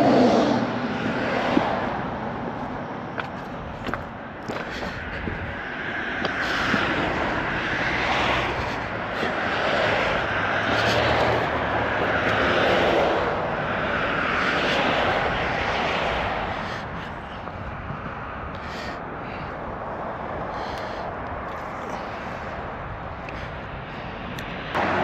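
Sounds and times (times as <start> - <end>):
passing engine: 0.0 - 25.0.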